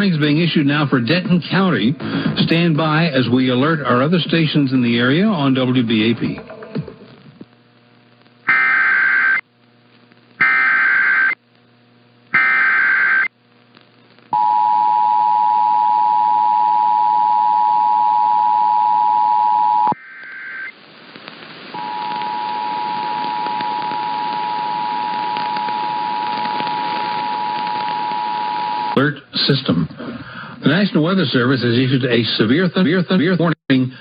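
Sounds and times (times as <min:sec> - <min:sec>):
buzzy data bursts: 0:08.4 - 0:09.4, 0:10.4 - 0:11.4, 0:12.3 - 0:13.4, 0:18.8 - 0:29.0.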